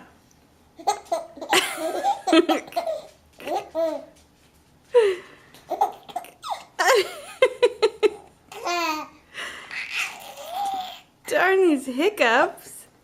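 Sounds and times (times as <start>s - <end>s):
baby giggling and laughing: 0.8s - 4.1s, 5.7s - 7.1s, 7.9s - 11.1s.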